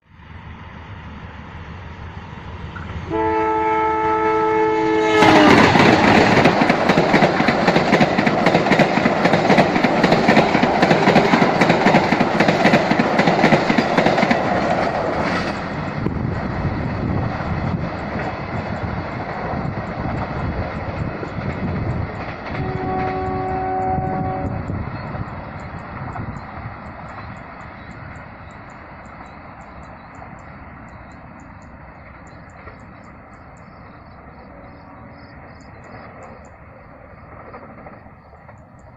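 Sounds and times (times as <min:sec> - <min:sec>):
train rumble and clickety-clack: 0:00.1 - 0:38.9
train air horn: 0:03.1 - 0:06.4, 0:22.5 - 0:24.8.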